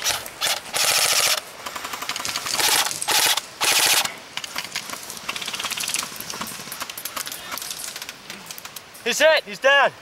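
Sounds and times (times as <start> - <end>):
airsoft guns firing bursts: 0.0 - 4.1
faint scattered shots: 0.0 - 8.8.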